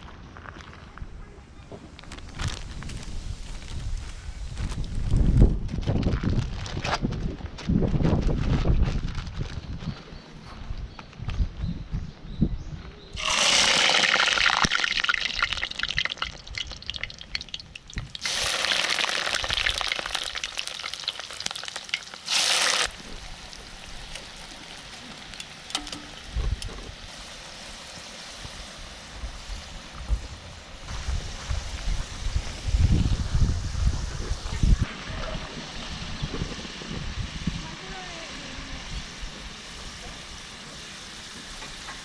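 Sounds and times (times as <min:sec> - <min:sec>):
water pouring: 0:13.2 - 0:26.4.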